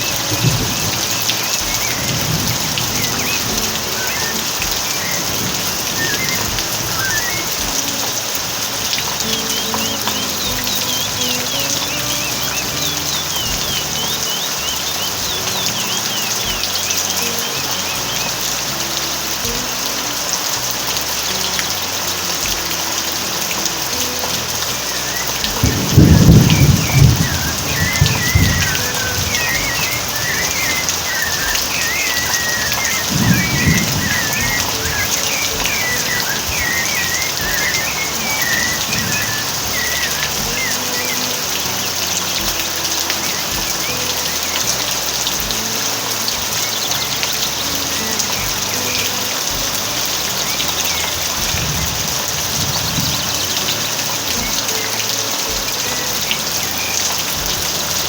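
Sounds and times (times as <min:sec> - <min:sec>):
thunder rumbling: 0:00.0 - 0:16.6, 0:24.9 - 0:41.2, 0:50.6 - 0:54.7
bird chirping: 0:00.0 - 0:58.0
steady rain falling: 0:00.0 - 0:58.0.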